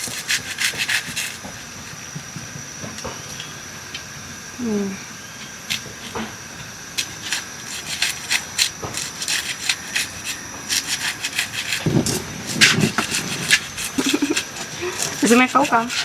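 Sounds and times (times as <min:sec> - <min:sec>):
dry scraping and rustling: 0:07.0 - 0:16.0.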